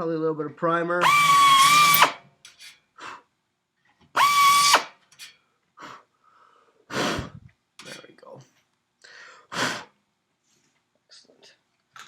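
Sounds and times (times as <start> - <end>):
pneumatic drill whining: 1.0 - 2.7, 4.2 - 5.3.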